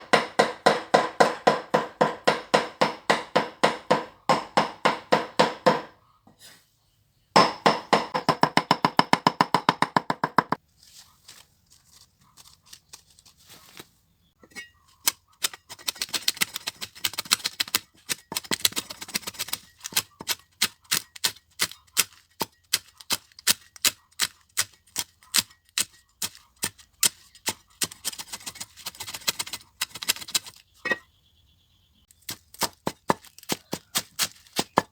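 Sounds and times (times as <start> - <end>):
knife chopping on wooden board: 0.0 - 5.9, 7.4 - 10.6, 32.3 - 34.9.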